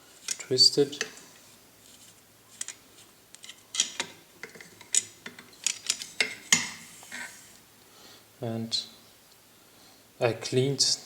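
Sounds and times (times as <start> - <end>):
brush scraping inside rifle action: 1.2 - 3.9, 5.8 - 7.6.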